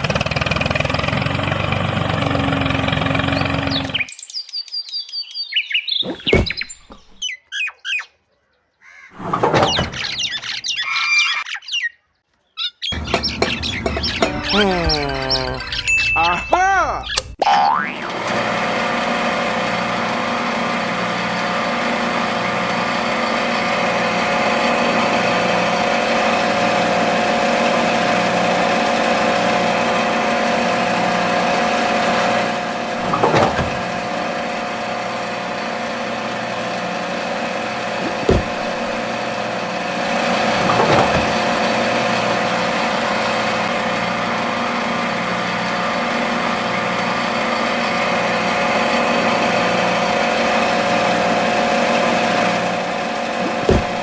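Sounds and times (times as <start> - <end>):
toy tractor motor humming: 0.0 - 4.1, 18.0 - 54.0.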